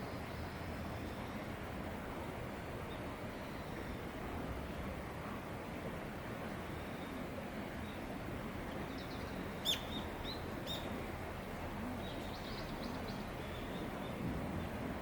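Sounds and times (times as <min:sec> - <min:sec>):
low outdoor background noise: 0:00.0 - 0:15.0
small birds chirping: 0:08.8 - 0:10.9, 0:12.0 - 0:14.2.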